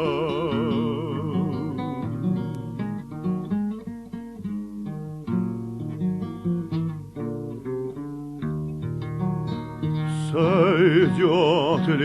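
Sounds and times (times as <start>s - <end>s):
person singing with vibrato: 0.0s - 2.2s, 10.1s - 12.0s
plucked acoustic guitar: 0.0s - 12.0s.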